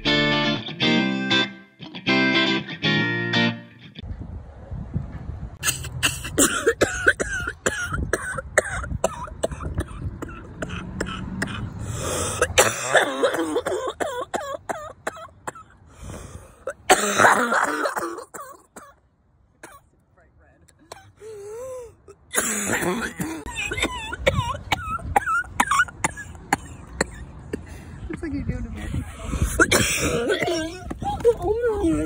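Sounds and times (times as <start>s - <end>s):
person coughing: 5.6s - 11.7s, 12.3s - 15.6s, 16.7s - 19.0s, 22.3s - 27.3s, 29.6s - 30.9s.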